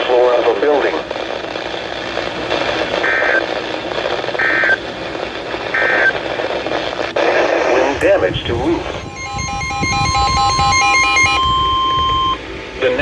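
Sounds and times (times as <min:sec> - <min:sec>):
radio hiss: 0:00.0 - 0:10.1
shrill two-tone data bursts: 0:08.7 - 0:12.4.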